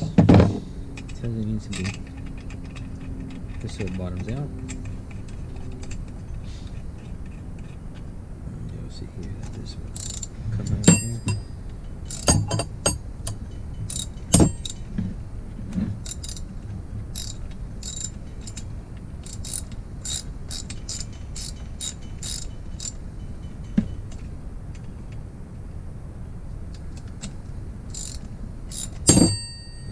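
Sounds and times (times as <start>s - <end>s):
ratchet wrench clicking: 9.9s - 11.4s, 12.1s - 14.8s, 16.0s - 16.5s, 17.2s - 23.0s, 27.9s - 29.9s
sharp metal knocks: 10.0s - 15.0s, 27.9s - 29.9s.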